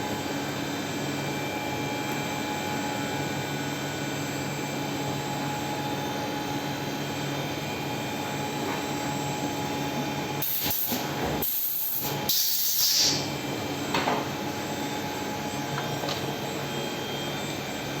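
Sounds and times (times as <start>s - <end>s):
loud hissing bursts: 10.4s - 13.2s.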